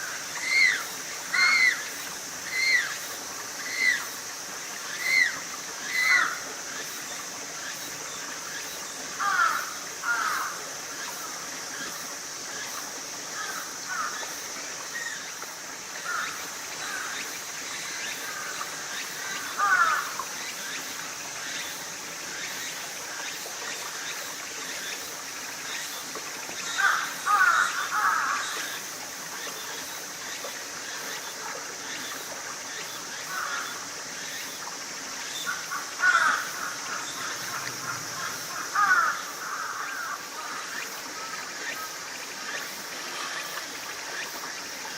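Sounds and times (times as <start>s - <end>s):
steady high hiss: 0.0s - 44.9s.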